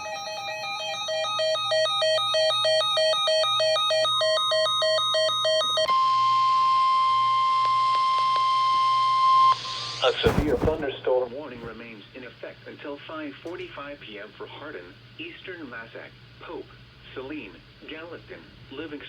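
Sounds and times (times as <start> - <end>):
long emergency-alert tone: 0.0 - 5.9.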